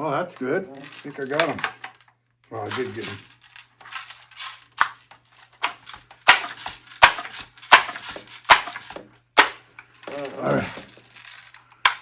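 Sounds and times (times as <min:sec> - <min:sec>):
air rifle clicks and clacks: 0:04.7 - 0:10.3, 0:10.9 - 0:12.0.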